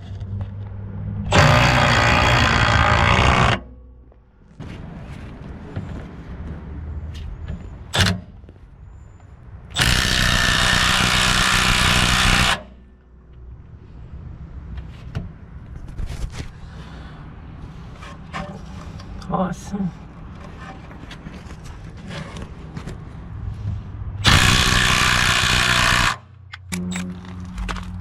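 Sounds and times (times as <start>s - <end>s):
impact wrench hammering: 1.3s - 3.8s, 8.0s - 8.3s, 9.8s - 12.9s, 24.2s - 27.0s.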